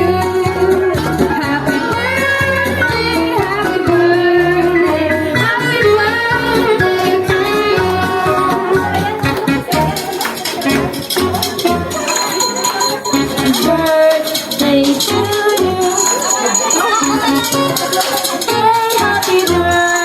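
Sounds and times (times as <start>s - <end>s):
person singing: 0.0s - 20.0s
plucked guitar: 6.7s - 20.0s
repeating bass line: 10.7s - 13.9s.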